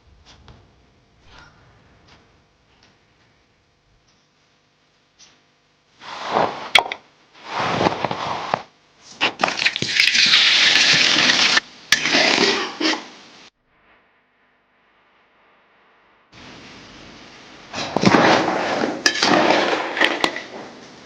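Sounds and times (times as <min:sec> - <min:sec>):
crackling crunching noise: 0:06.0 - 0:21.0.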